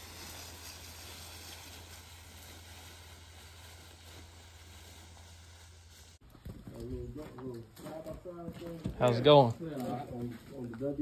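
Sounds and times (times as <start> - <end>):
faint steady hiss: 0.0 - 6.2.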